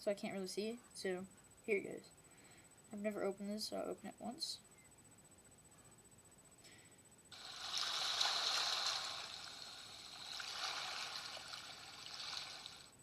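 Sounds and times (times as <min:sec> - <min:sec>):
recorded rushing water from phone speaker: 0:07.4 - 0:13.0.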